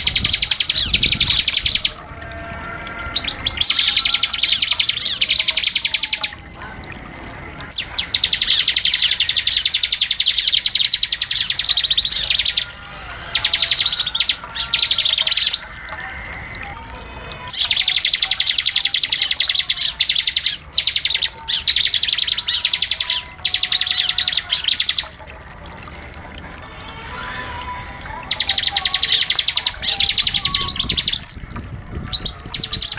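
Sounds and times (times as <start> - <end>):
bird singing buzzing trills: 0.0 - 32.9.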